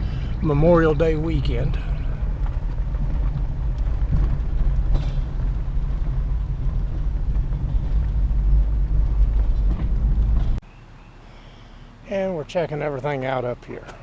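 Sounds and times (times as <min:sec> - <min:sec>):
vehicle rumble from inside cab: 0:00.0 - 0:10.6.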